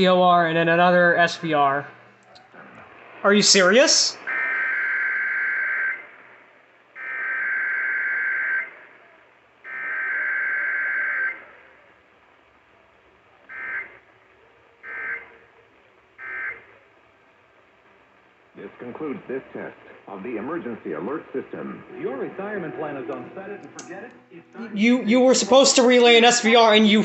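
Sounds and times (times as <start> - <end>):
alert data bursts over radio: 3.0 - 6.2, 14.8 - 15.4, 16.2 - 16.8.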